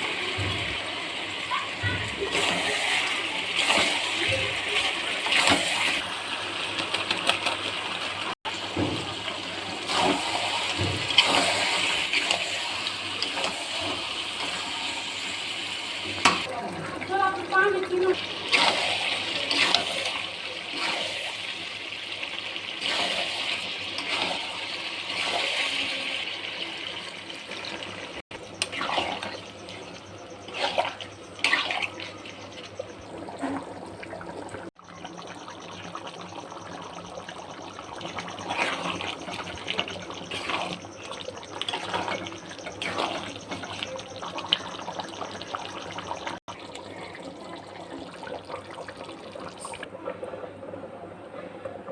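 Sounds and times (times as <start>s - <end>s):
water pouring into a pot: 0.0s - 50.0s
liquid splashing: 27.5s - 49.9s.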